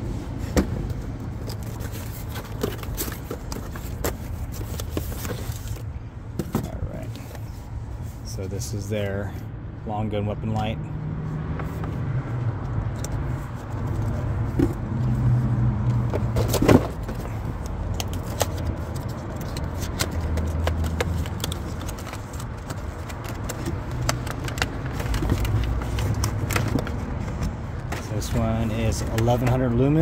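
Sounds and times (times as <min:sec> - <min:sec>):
packaging clicks and rattles: 0:16.2 - 0:27.0.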